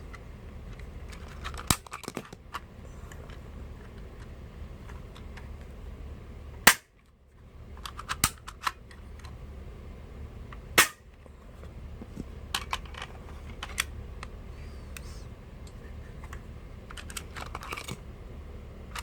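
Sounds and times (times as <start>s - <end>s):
airsoft pistol shot crack: 6.7s - 6.9s, 10.8s - 11.1s.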